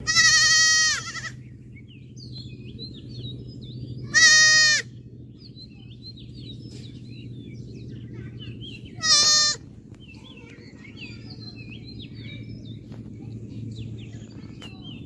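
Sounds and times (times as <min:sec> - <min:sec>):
goat bleating: 0:00.0 - 0:01.4, 0:04.1 - 0:04.9, 0:09.0 - 0:09.6
steady low hum: 0:00.0 - 0:15.0.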